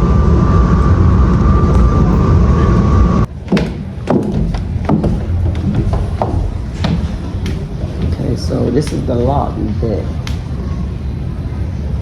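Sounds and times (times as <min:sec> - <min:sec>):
wind buffeting microphone: 0:00.0 - 0:12.0
sharp knocks: 0:03.4 - 0:09.0.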